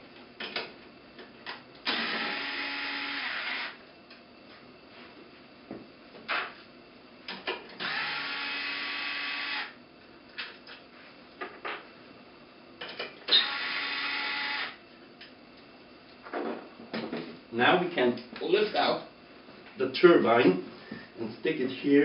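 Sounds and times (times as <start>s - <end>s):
power screwdriver motor whine: 1.8s - 3.8s, 7.8s - 9.8s, 13.3s - 14.8s.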